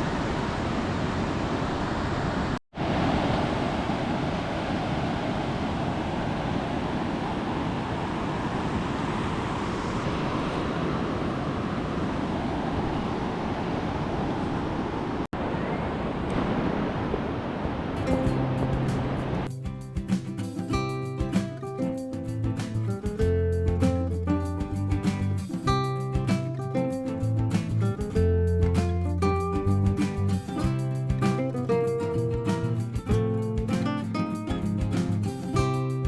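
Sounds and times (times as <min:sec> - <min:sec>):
wind on microphone: 0:00.0 - 0:19.5
surf breaking on sandy beach: 0:00.0 - 0:21.9
music: 0:18.0 - 0:36.0.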